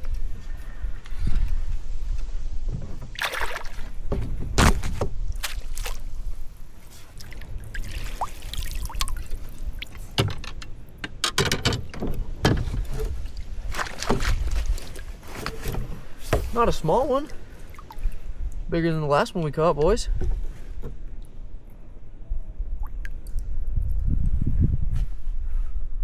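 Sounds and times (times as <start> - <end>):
wind rumble on microphone: 0.0 - 26.0
water splashing and sloshing: 2.7 - 18.6.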